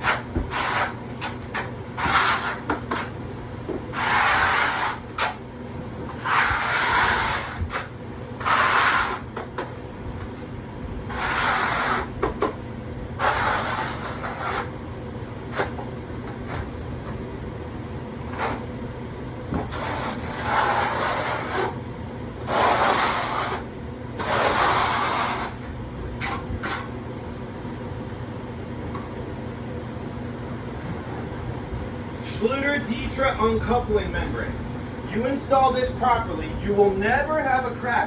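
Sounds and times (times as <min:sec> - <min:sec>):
hand tool scraping mortar: 0:00.0 - 0:03.1, 0:03.9 - 0:05.4, 0:06.1 - 0:09.6, 0:11.1 - 0:12.1, 0:13.2 - 0:14.7, 0:19.7 - 0:21.8, 0:22.5 - 0:25.6, 0:26.2 - 0:26.9
steady low hum: 0:00.0 - 0:38.0.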